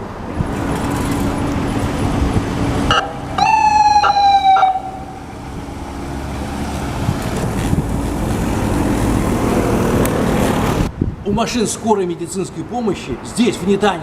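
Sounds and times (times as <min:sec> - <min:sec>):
street traffic: 0:00.0 - 0:14.0
ambulance siren: 0:02.9 - 0:05.4.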